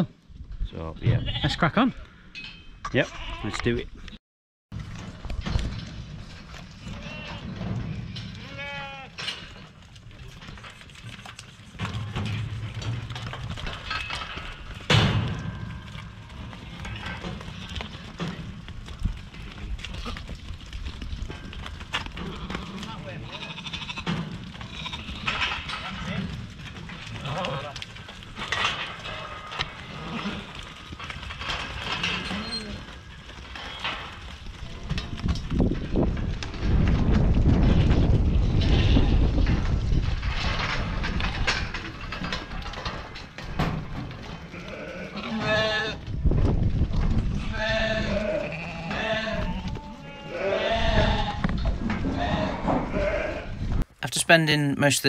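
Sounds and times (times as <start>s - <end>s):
sheep pen background noise: 4.8s - 55.0s
sheep bleating: 8.4s - 9.1s, 22.3s - 25.3s, 44.5s - 46.0s, 47.4s - 51.4s.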